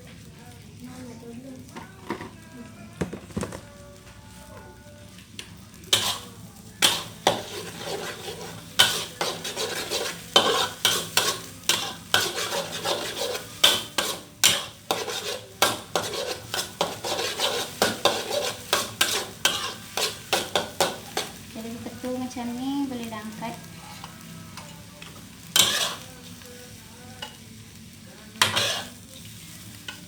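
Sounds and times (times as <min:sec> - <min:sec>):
eggs sizzling in oil: 0:01.1 - 0:30.0
spatula scraping frying pan: 0:05.9 - 0:21.4, 0:23.7 - 0:26.2, 0:28.4 - 0:30.0.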